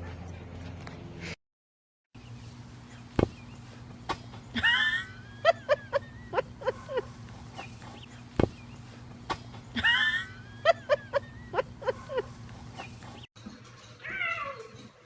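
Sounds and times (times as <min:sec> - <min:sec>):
dull thumps: 0:03.1 - 0:04.4, 0:08.4 - 0:09.6.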